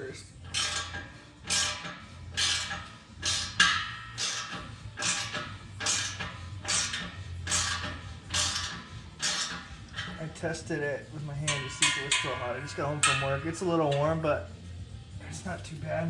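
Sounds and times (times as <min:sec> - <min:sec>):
hand ratchet clicking: 0:00.4 - 0:10.4.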